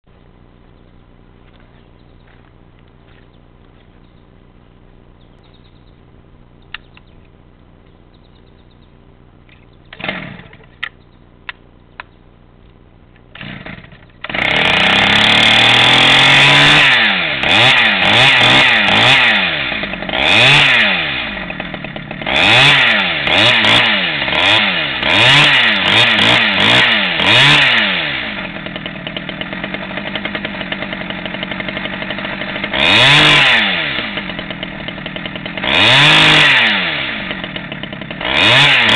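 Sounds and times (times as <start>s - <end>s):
chainsaw revving and idling: 9.9s - 11.6s, 13.2s - 38.9s.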